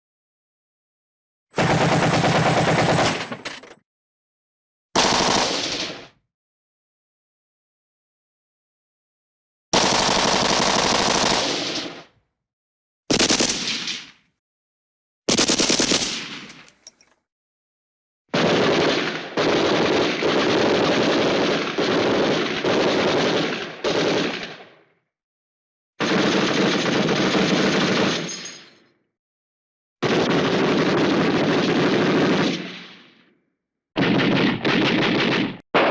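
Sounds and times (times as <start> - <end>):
machine-gun bursts: 1.6 - 3.4, 5.0 - 6.0, 9.8 - 12.0, 13.1 - 13.8, 15.3 - 16.8, 34.0 - 35.9.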